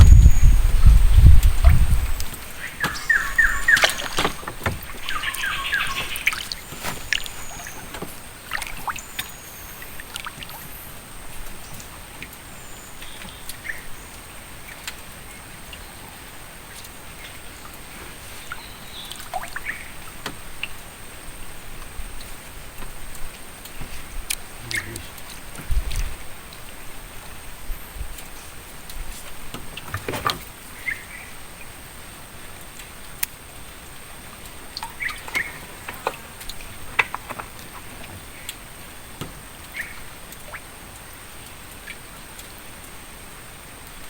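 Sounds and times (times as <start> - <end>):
light knocks of wooden boat: 0.0 - 9.3, 29.0 - 30.6
birds chirping: 0.0 - 14.8, 17.1 - 20.5, 23.9 - 25.8, 29.4 - 31.8, 34.0 - 40.7
faint steady hiss: 0.0 - 44.0.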